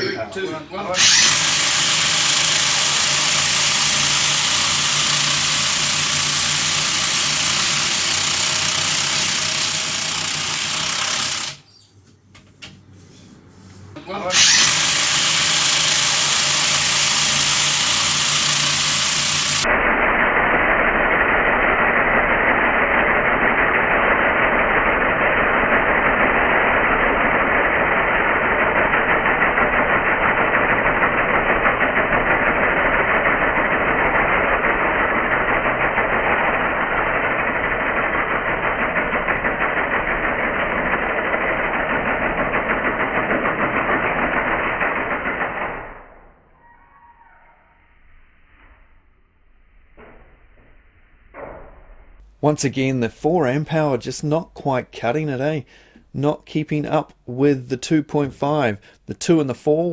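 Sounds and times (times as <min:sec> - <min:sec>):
impact wrench hammering: 0:01.0 - 0:11.6, 0:14.3 - 0:45.9.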